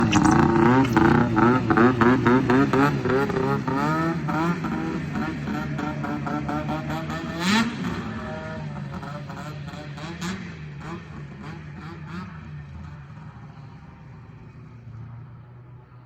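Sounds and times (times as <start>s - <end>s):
snowmobile engine revving: 0.0s - 12.3s.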